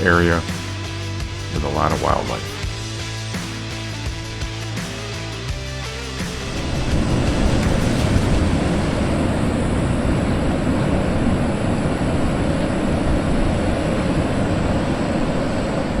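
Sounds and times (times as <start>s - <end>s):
wind buffeting microphone: 6.8s - 16.0s.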